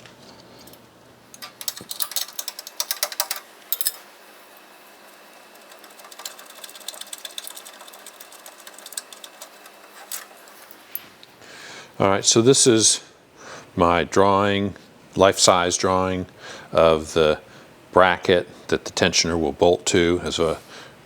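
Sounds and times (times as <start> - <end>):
light mechanical clicks and rattles: 0.0 - 4.0, 5.5 - 11.0.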